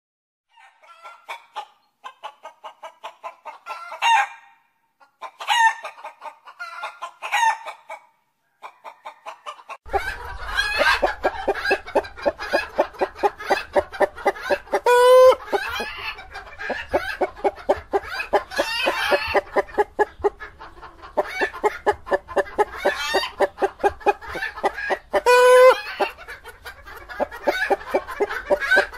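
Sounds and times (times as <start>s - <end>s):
hens clucking: 0.6s - 4.3s, 5.0s - 28.9s
hens squawking: 9.9s - 28.9s.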